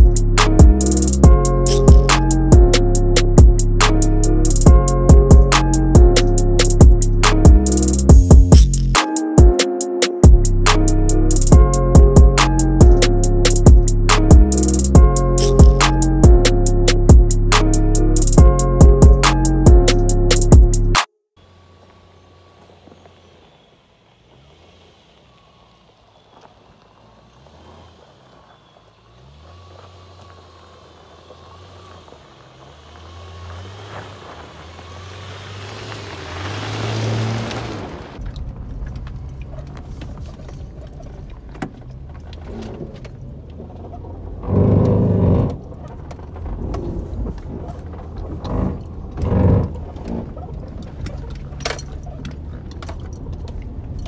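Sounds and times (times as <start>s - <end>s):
rattling: 0.0s - 9.0s, 10.2s - 21.0s
tyres rumbling on rough ground: 0.0s - 9.0s, 10.2s - 54.0s
car engine revving: 0.0s - 54.0s.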